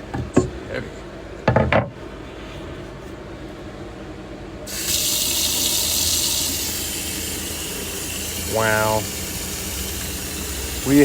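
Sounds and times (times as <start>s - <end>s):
faucet water running into sink: 4.7s - 11.0s.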